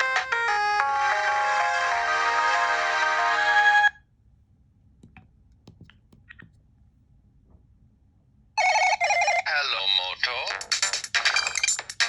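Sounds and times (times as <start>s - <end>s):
synthesized phone ringtone: 8.6s - 9.5s.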